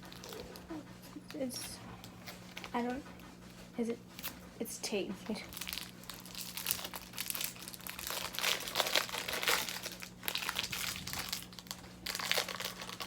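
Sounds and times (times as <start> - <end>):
candy wrapper crinkling: 5.5 - 13.0.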